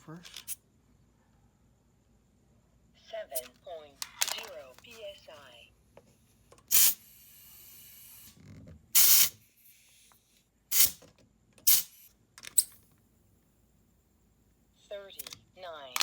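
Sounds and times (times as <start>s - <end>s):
compressed air hissing blasts: 6.7s - 8.4s, 9.0s - 11.0s, 11.6s - 12.1s.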